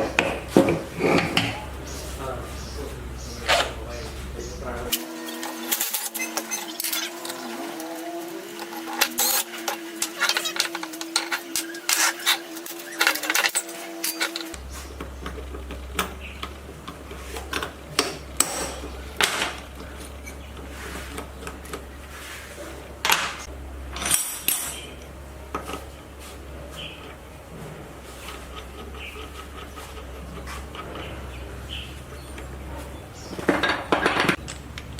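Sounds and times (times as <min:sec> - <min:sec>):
steady hum: 0:00.0 - 0:34.9
metal tools clinking: 0:23.9 - 0:25.8, 0:28.3 - 0:34.9.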